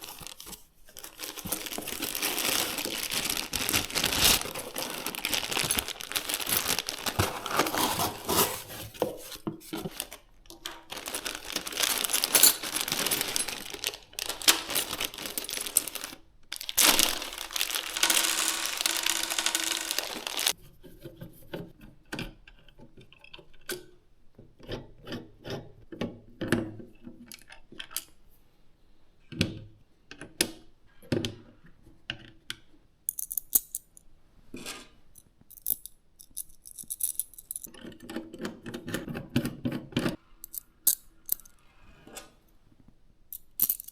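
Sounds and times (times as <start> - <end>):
packaging rustling: 0.0 - 20.5
small parts clicking: 10.5 - 20.6.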